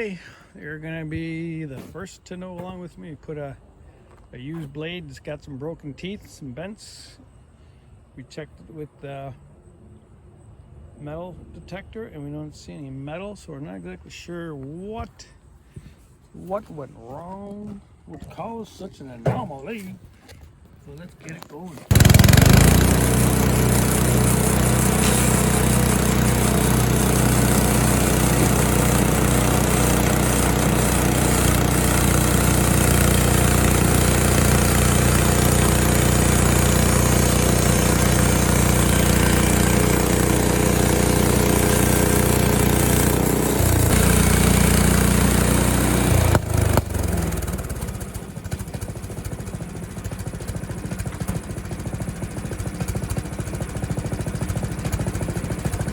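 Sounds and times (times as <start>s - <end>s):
small gasoline engine running: 21.8s - 55.9s.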